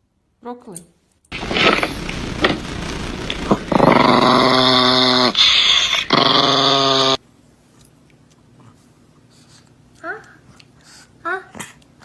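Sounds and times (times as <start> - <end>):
dog growling: 1.3 - 7.2.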